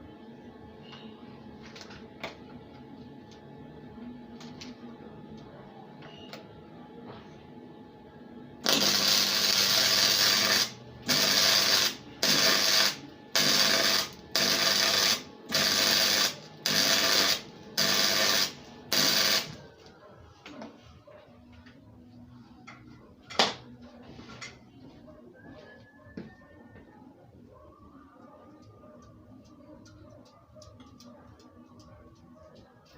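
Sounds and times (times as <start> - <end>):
arc welding crackle: 8.6 - 19.6.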